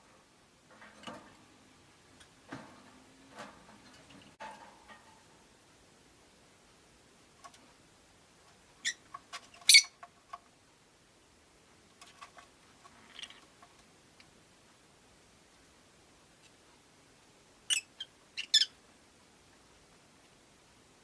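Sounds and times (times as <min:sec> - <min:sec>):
lovebirds chirping: 0:09.6 - 0:09.9, 0:17.7 - 0:18.8.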